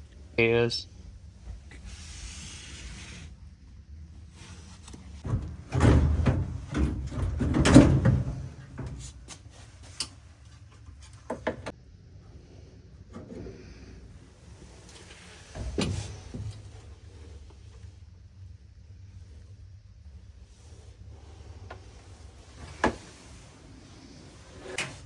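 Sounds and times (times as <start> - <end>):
knocks and scraping of metal parts: 4.8 - 11.7.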